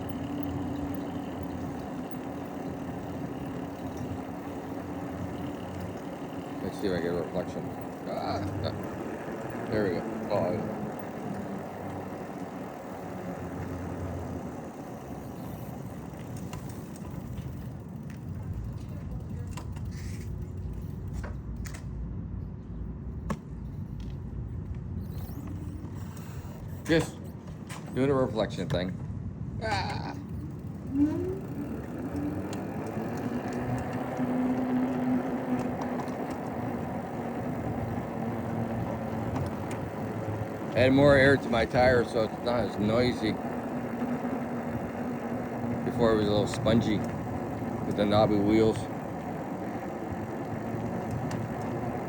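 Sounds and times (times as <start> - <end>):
tyres rolling on pavement: 0.0 - 21.8, 23.0 - 52.0.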